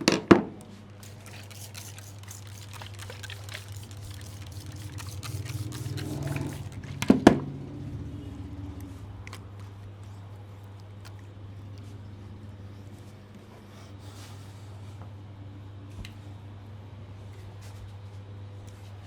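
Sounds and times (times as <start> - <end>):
steady low hum: 0.6 - 17.4
wet squishing scalp massage: 0.9 - 7.0.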